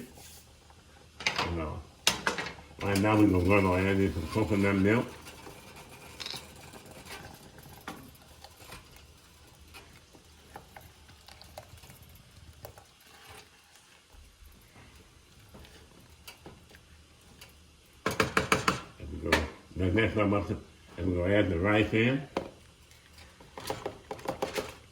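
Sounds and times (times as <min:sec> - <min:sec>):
small kitchen clicks and taps: 0:01.2 - 0:03.1, 0:17.4 - 0:19.6, 0:23.4 - 0:24.9.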